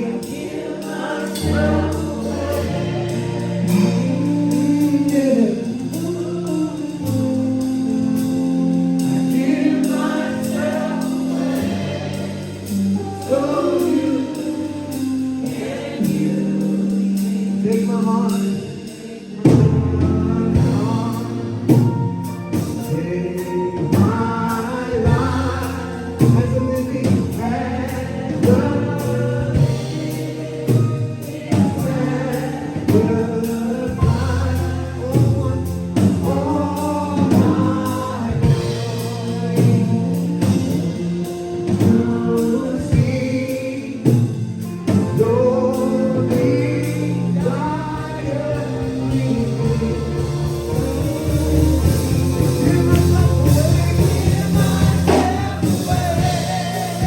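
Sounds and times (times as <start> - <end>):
choir and congregation singing: 0.0 - 57.0
keyboard and band accompaniment: 0.0 - 57.0
sharp drum hits: 49.1 - 57.0.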